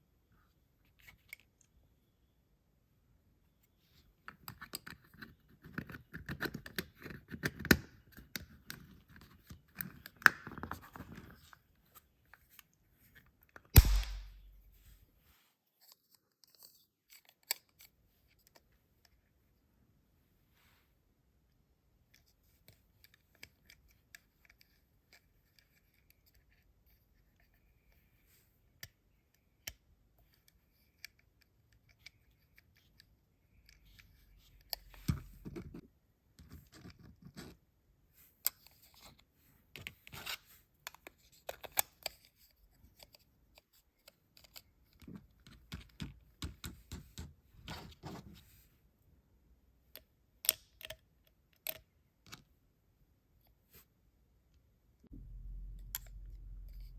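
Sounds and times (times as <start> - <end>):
small clicks and scratches: 0.4 - 1.8, 3.6 - 13.7, 15.7 - 19.6, 22.0 - 48.7, 49.8 - 52.6.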